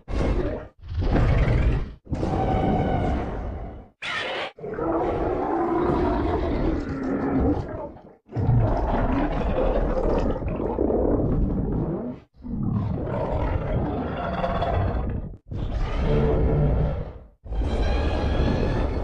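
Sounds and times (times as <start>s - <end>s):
creature roaring: 4.0s - 17.2s.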